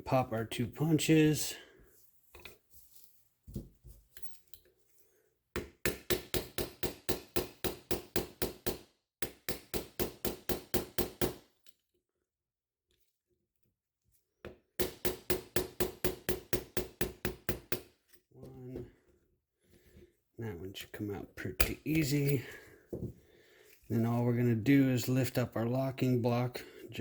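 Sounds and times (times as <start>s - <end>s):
hammer tapping a pin punch: 5.6s - 11.4s, 14.5s - 17.9s.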